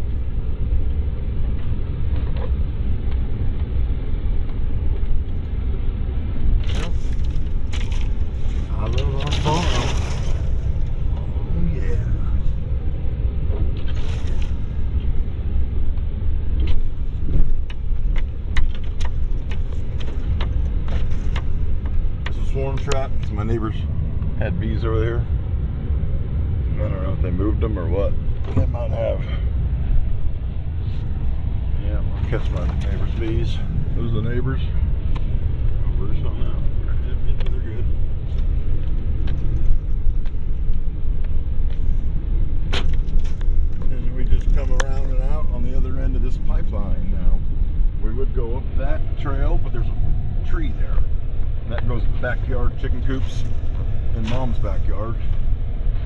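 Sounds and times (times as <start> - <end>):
vehicle engine rumble: 0.0 - 56.0
knocks and rattles: 6.5 - 11.4, 16.6 - 23.4
sharp clicks and rattles: 12.3 - 24.4.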